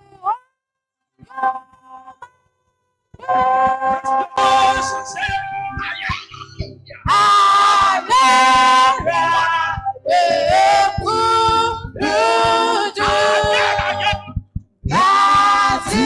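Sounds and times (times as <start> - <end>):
low steady accompaniment: 3.2 - 16.0
people singing worship song: 3.2 - 16.0.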